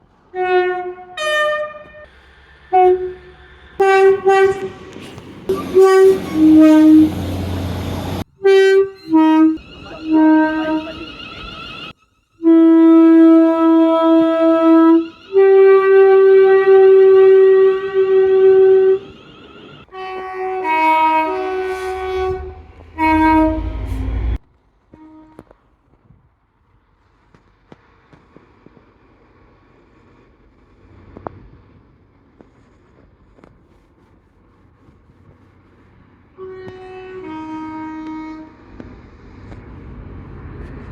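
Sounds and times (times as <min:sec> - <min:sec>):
train horn blasts: 0:00.3 - 0:02.1, 0:02.7 - 0:25.5, 0:36.3 - 0:38.8
low background rumble: 0:20.8 - 0:24.4.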